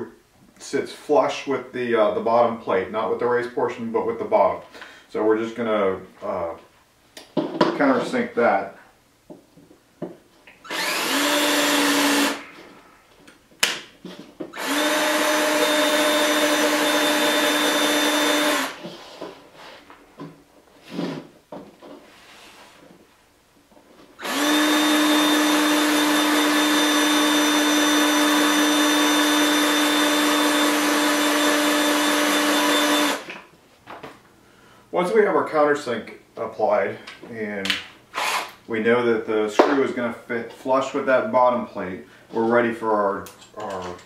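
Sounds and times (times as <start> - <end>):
power drill running: 10.6 - 12.6, 14.5 - 18.9, 24.2 - 33.3, 38.1 - 38.6.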